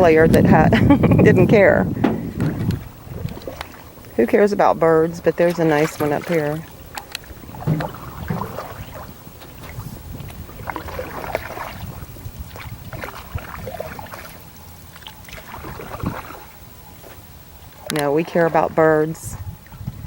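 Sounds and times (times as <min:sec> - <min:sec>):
canoe paddle strokes splashing: 0:00.0 - 0:20.0
light knocks on canoe: 0:02.0 - 0:02.8, 0:05.9 - 0:09.8.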